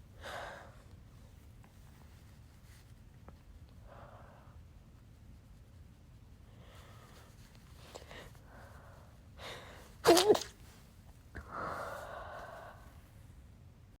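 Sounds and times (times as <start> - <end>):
person sneezing: 10.0 - 10.6.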